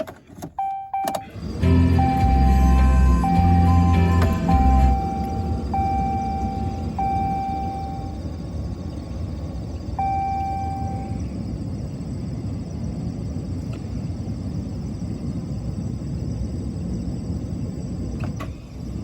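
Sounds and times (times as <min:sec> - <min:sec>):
truck engine cranking: 0:00.2 - 0:07.3
steady high whine: 0:00.7 - 0:19.0.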